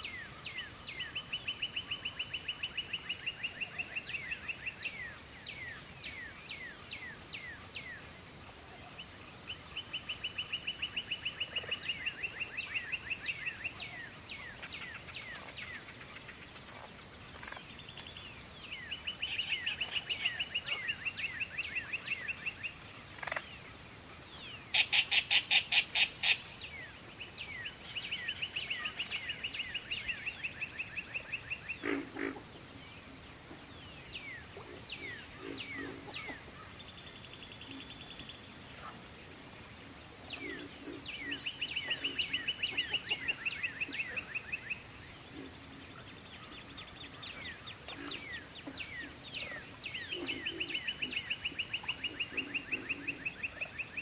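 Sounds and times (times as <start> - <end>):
crickets chirping: 0.0 - 54.0.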